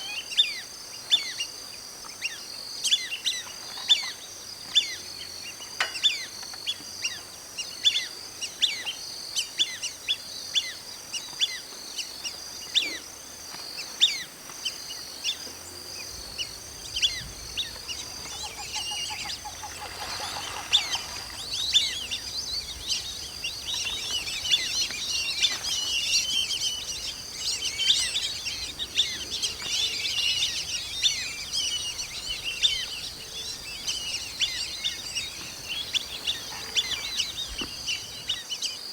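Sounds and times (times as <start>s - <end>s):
ducks whistling: 16.7s - 38.1s.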